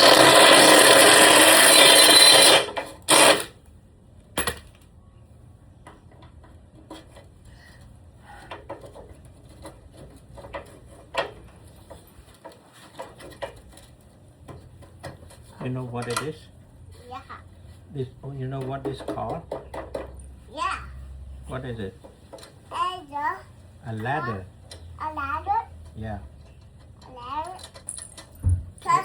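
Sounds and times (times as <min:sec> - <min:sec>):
power drill running: 0:00.0 - 0:03.6.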